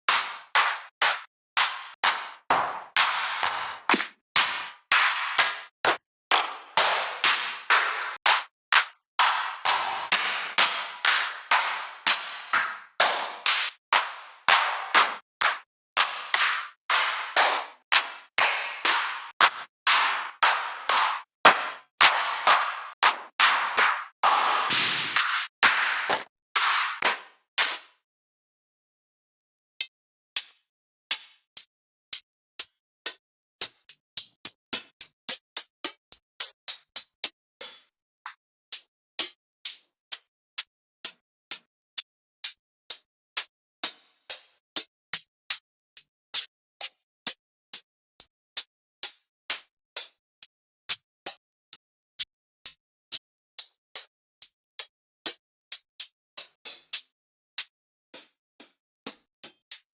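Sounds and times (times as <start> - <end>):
drum machine percussion hits: 0.1 - 27.9.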